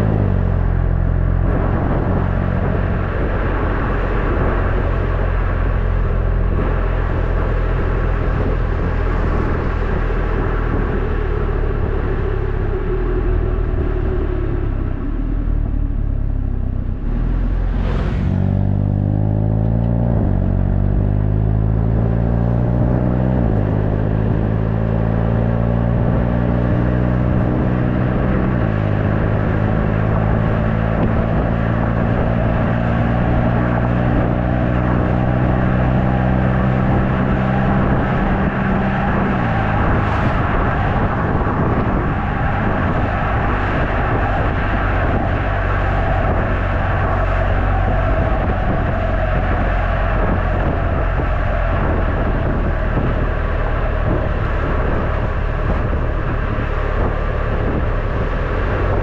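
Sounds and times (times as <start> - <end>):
car engine accelerating: 0.0 - 59.0.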